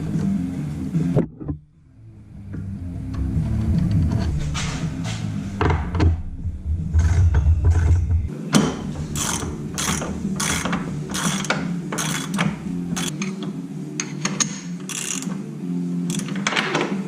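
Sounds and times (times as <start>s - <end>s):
ratchet wrench clicking: 9.0s - 13.2s, 14.0s - 15.4s, 16.1s - 16.5s.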